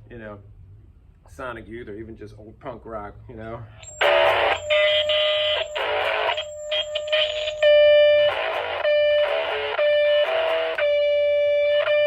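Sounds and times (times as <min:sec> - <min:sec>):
distorted electric guitar chords: 0:03.8 - 0:12.0
guitar feedback tone: 0:03.8 - 0:12.0.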